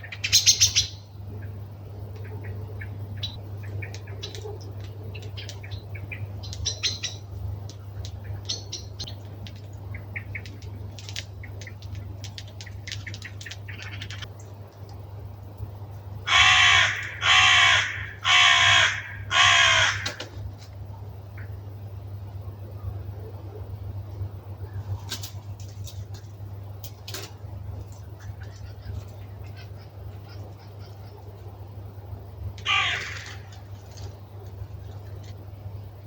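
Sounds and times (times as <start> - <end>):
small birds chipping and calling: 0.0 - 20.5, 24.2 - 36.0
harsh crow-like caws: 16.2 - 20.3, 32.6 - 33.7.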